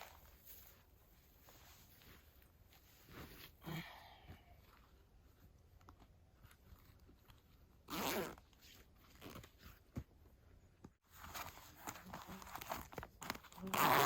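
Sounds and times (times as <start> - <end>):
faint rustles and clicks: 0.0 - 14.0.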